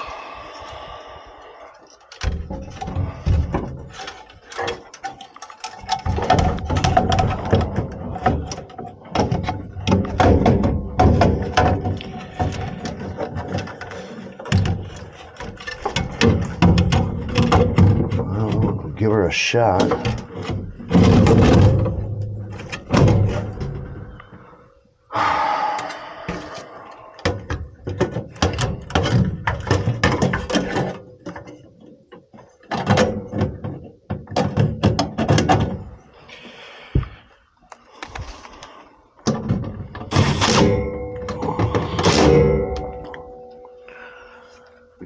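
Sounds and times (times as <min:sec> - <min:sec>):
knocks and thuds: 0:02.2 - 0:04.0, 0:06.0 - 0:13.6, 0:15.8 - 0:19.0, 0:19.9 - 0:24.1, 0:36.9 - 0:37.2.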